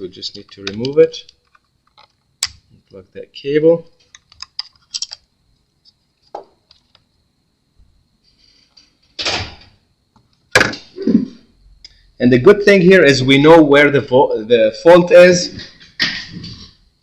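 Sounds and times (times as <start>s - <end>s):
laptop parts clicking and tapping: 0.3s - 2.6s, 4.0s - 5.2s.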